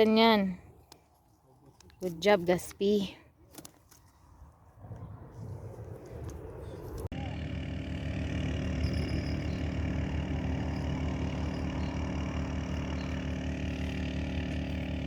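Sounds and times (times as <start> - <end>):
engine idling: 6.5 - 15.0.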